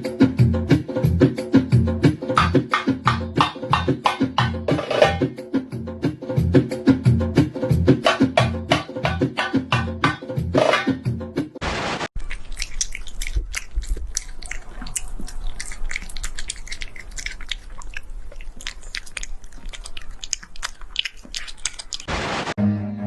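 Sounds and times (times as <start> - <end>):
animal chewing and crunching food: 12.2 - 22.2.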